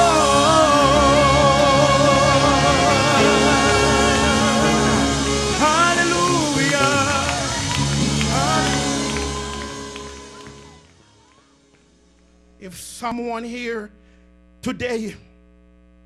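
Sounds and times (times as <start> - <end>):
person singing with vibrato: 0.0 - 10.8
instrumental accompaniment: 0.0 - 12.4.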